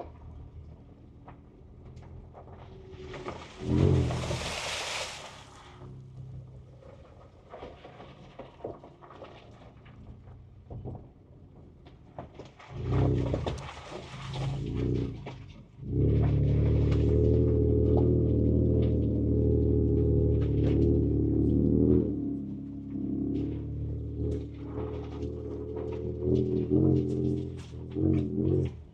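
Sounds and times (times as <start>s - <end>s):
engine drone from inside cab: 14.0s - 28.9s.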